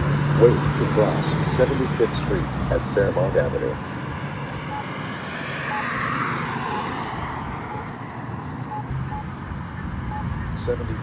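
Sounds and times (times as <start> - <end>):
car passing: 0.0 - 11.0.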